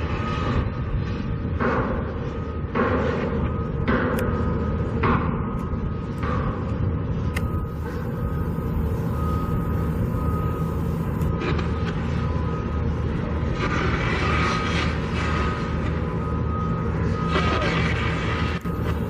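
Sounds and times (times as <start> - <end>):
heavy machinery engine running: 7.1 - 19.0.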